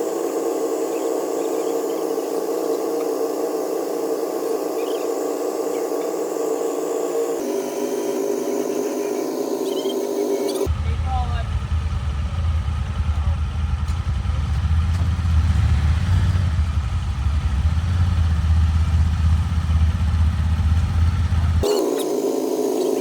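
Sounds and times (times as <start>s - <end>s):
higher-pitched steady hum: 0.0s - 11.2s, 21.6s - 23.0s.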